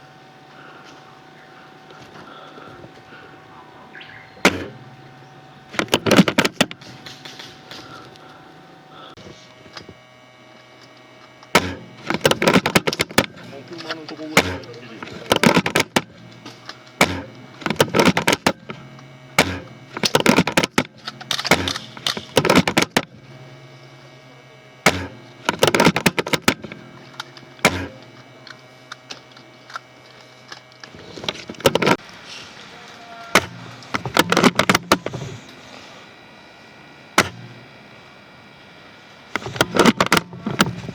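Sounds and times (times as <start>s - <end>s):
low steady hum: 0.0s - 40.9s
rapid bursts of clicks: 9.6s - 24.2s, 24.8s - 32.1s.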